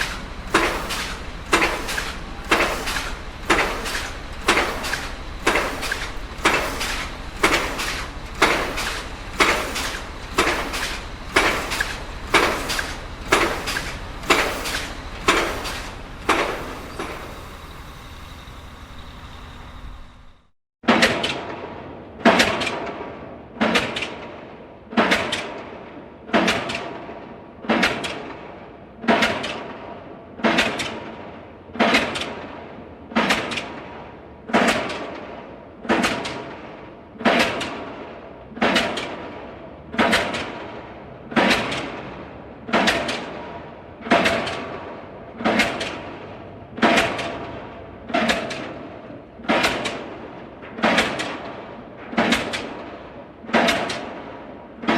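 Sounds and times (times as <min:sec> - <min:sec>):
pile driver hammer striking: 0:00.0 - 0:17.7, 0:42.7 - 0:43.4, 0:44.0 - 0:44.8, 0:45.4 - 0:46.1, 0:46.8 - 0:47.5, 0:49.4 - 0:52.9
short metallic ring: 0:13.5 - 0:20.2.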